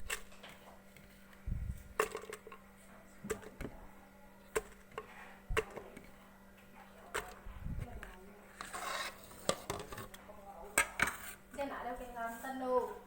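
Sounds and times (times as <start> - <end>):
utensils and dishes clinking: 2.0 - 2.6.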